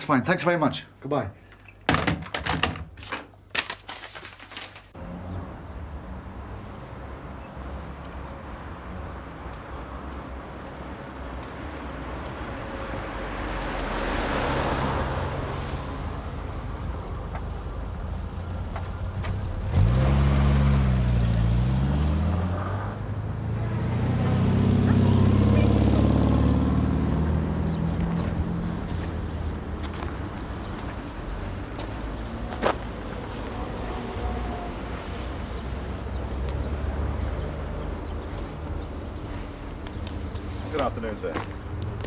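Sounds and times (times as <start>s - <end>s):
vehicle engine rumbling: 15.1s - 42.0s.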